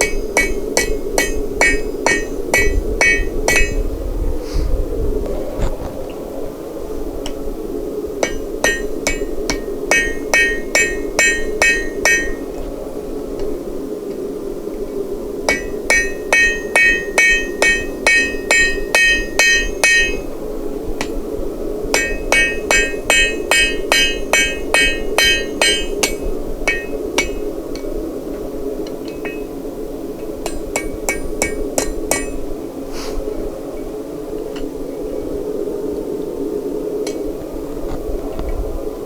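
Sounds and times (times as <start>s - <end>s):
hammer ringing on anvil: 0.0s - 3.8s, 8.2s - 12.6s, 15.5s - 20.3s, 22.0s - 27.4s, 29.0s - 29.5s, 30.4s - 32.5s.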